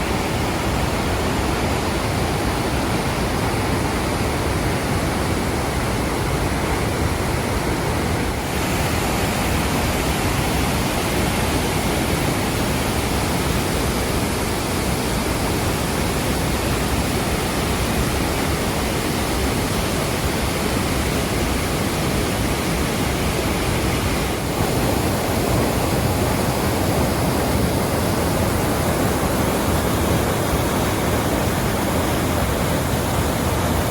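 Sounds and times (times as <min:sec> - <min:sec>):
waterfall rushing: 0:00.0 - 0:33.9.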